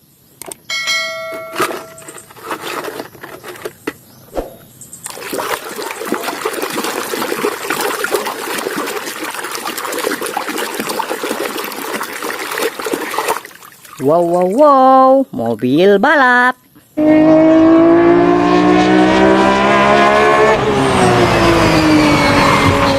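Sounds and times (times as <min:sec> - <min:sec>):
water running and splattering: 0:05.0 - 0:14.9.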